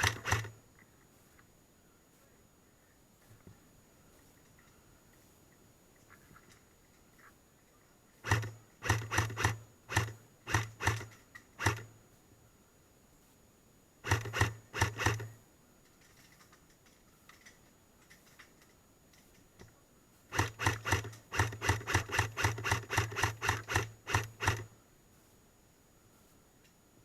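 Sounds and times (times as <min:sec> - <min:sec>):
airsoft gun shots: 0:08.2 - 0:11.9.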